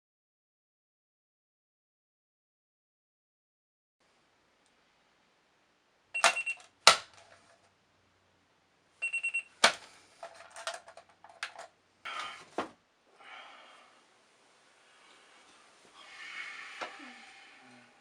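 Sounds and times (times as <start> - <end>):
alarm clock beeping: 6.2 - 6.6, 9.0 - 9.5
clattering and rustling: 9.6 - 12.8.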